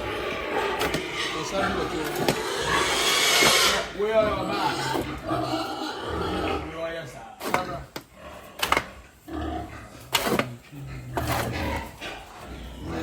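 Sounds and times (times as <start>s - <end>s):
pig squeals: 0.0s - 6.8s
pigs grunting: 0.0s - 13.0s.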